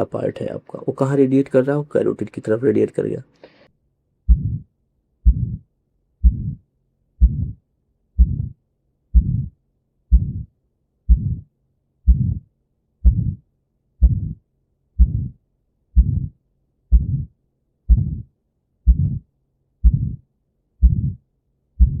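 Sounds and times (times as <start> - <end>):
heartbeats with rough murmur: 4.3 - 7.6, 8.2 - 11.5, 12.1 - 13.4, 14.0 - 14.4, 15.0 - 15.4, 16.0 - 20.2, 20.8 - 21.2, 21.8 - 22.0.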